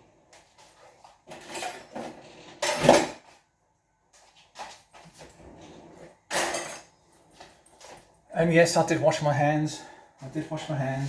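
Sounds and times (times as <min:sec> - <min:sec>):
utensils and dishes clattering: 0:01.3 - 0:03.2, 0:06.3 - 0:07.0.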